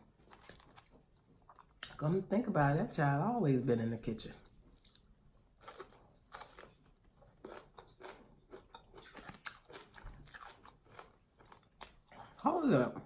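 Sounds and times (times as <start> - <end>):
person chewing crunchy food: 0.0 - 2.0, 4.7 - 12.6.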